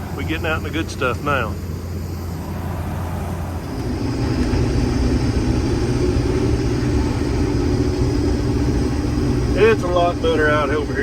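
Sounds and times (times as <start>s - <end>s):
combine harvester droning: 0.0s - 11.0s
higher hum: 0.0s - 11.0s.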